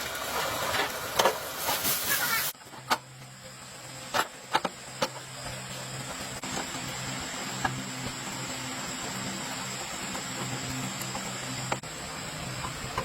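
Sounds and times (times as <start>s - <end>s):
loud hiss: 0.0s - 2.6s.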